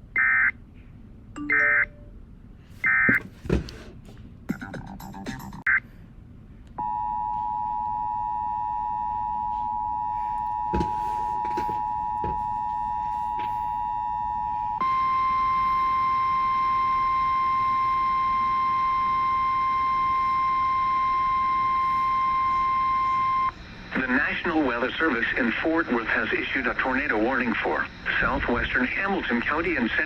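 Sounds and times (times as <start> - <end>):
two-tone attention signal: 1.4 - 2.1
steady alarm tone: 6.8 - 29.4.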